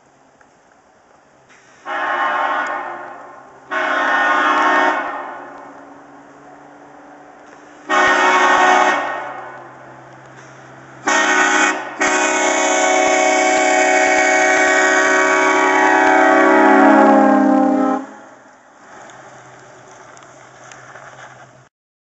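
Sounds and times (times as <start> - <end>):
train horn blasts: 1.8 - 5.6, 7.8 - 9.6, 11.0 - 18.4.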